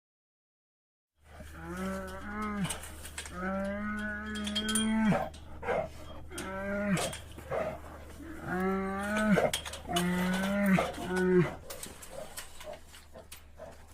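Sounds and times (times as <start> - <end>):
steady low hum: 1.2 - 13.9
bear moaning calls: 1.3 - 11.8.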